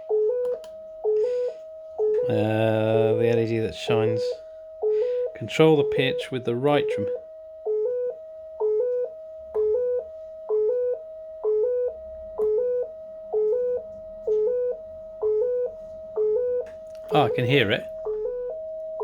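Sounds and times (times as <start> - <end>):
synthesizer bleeping tones: 9.7 - 19.0.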